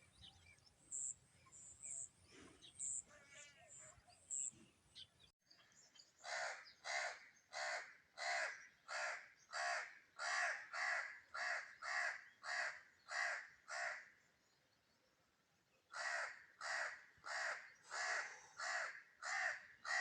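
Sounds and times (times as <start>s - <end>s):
crow cawing: 6.2s - 14.1s, 15.9s - 20.0s.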